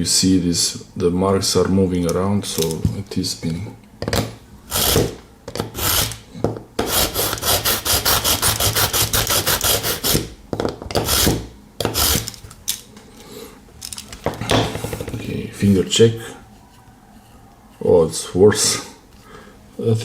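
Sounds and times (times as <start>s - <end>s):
knife scraping in sharpener: 4.7s - 6.2s, 6.8s - 10.2s, 11.0s - 12.4s.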